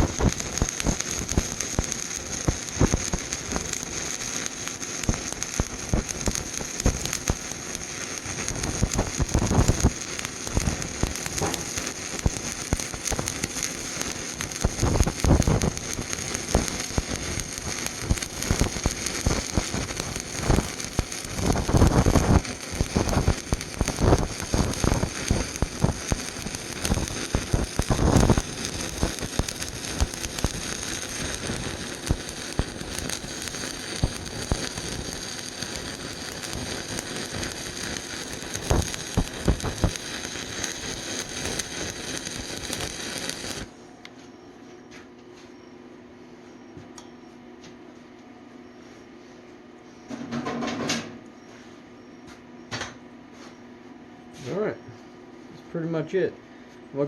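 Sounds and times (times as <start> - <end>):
welding arc crackling and hissing: 0.0 - 43.8.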